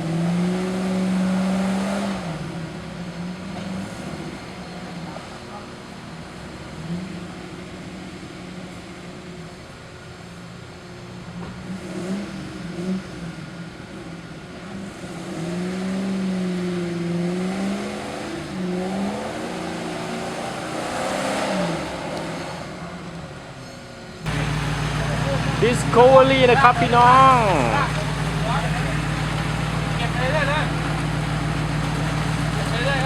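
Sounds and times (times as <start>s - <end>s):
off-road vehicle engine revving: 0.0s - 4.5s, 11.6s - 13.6s, 14.6s - 22.8s, 24.3s - 33.0s.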